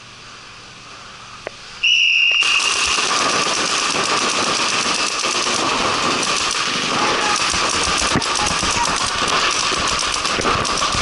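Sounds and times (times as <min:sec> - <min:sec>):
paintball guns firing rapidly: 0:02.4 - 0:11.0.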